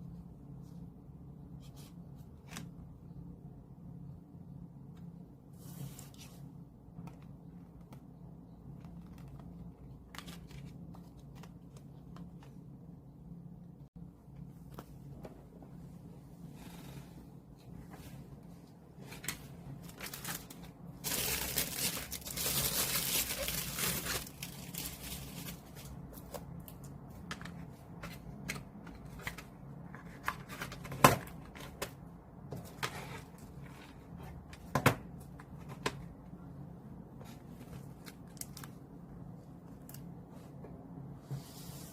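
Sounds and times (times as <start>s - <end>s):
plastic wrap and paper crinkling: 19.7s - 26.3s.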